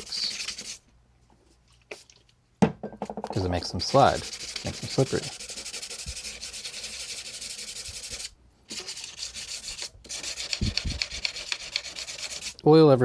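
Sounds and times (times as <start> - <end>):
sandpaper scrubbing metal: 0.0 - 0.8, 3.7 - 12.6.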